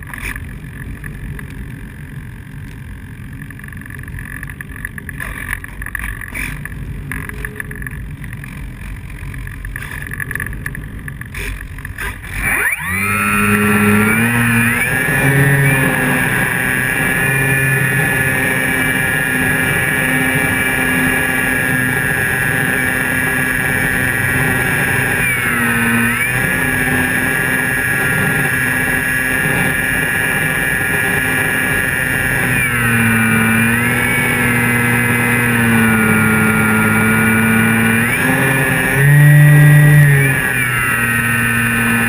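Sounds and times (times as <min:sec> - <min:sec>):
electric motor whine: 0:12.1 - 0:42.0.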